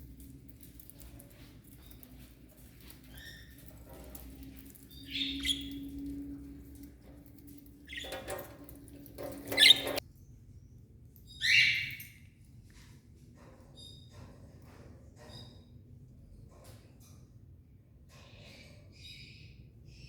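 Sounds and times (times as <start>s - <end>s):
cage birds calling: 0.0s - 10.0s, 11.3s - 12.2s.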